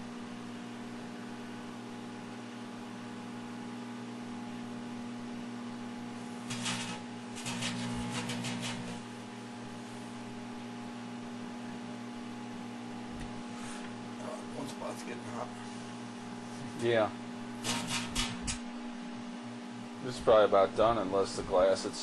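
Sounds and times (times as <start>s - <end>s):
microwave oven hum: 0.0s - 22.0s
crackling sparks: 6.3s - 9.1s, 17.6s - 18.6s.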